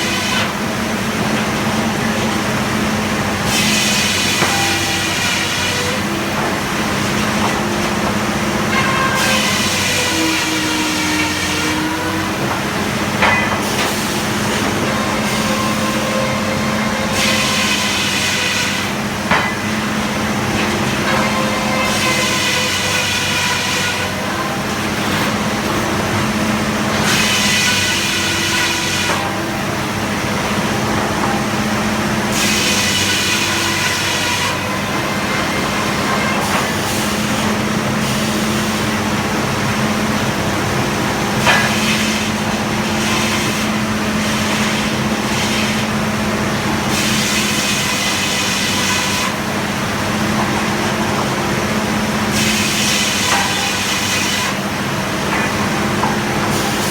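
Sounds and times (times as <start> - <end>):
circular saw whining through wood: 0.0 - 30.1
sawmill engine drone: 0.0 - 56.9.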